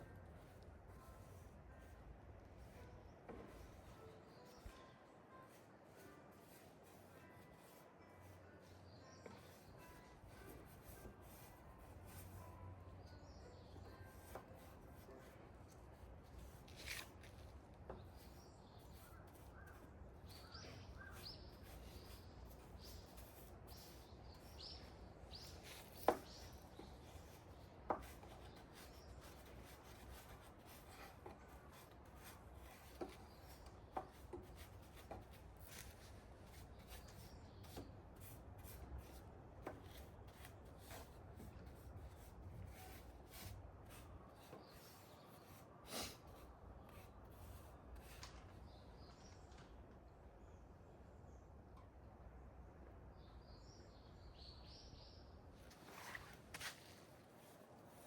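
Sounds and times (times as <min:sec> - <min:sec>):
rubbing and scraping on wood: 0:16.0 - 0:48.5.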